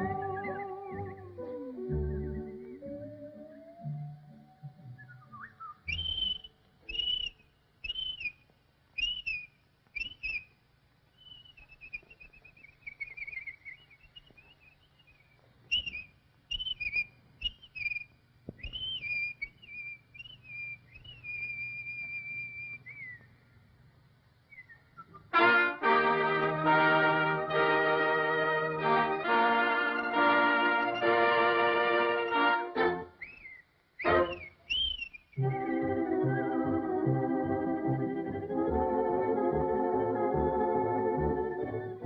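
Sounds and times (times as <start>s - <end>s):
long held whistle: 0.0s - 8.4s, 9.0s - 10.5s, 11.2s - 23.3s, 24.5s - 25.7s, 29.8s - 35.8s
warbling whistled trill: 0.0s - 8.4s, 9.0s - 10.6s, 11.2s - 23.4s, 24.5s - 25.4s, 29.8s - 42.0s
whistled bird chirps: 0.0s - 23.4s, 24.4s - 25.4s, 32.2s - 35.5s.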